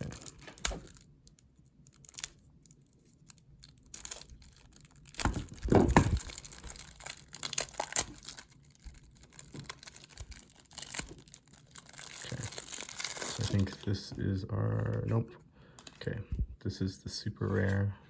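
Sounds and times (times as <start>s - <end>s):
packaging ripping: 0.0s - 14.0s
wrapper crinkling and rustling: 0.0s - 14.1s.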